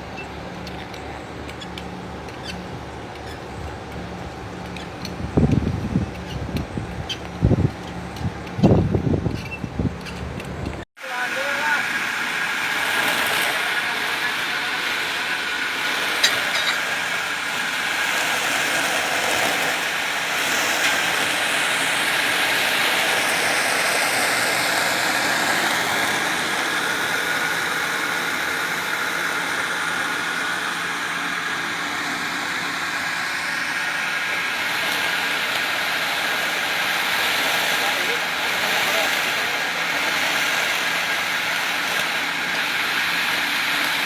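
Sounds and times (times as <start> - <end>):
drilling rig running: 0.0 - 44.0.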